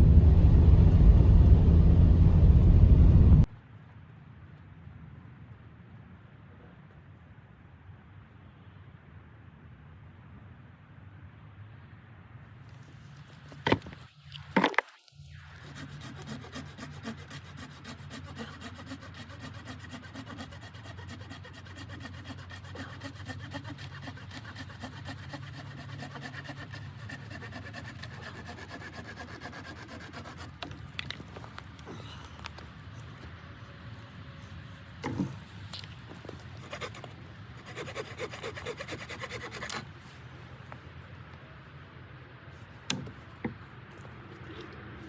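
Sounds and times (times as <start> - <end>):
steady scraping: 12.8 - 33.4, 34.4 - 40.6.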